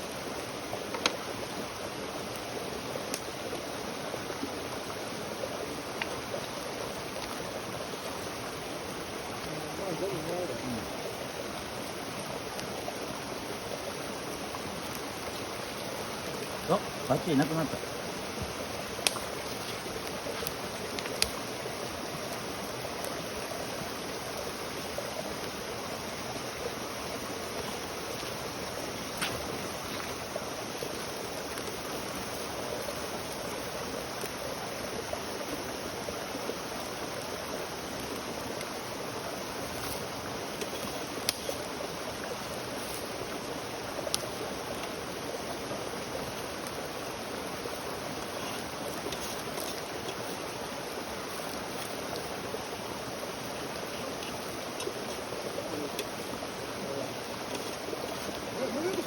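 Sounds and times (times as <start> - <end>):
campfire hissing: 0.0 - 59.0
wood popping: 0.8 - 1.3, 18.2 - 22.3, 26.9 - 32.3, 39.5 - 41.7.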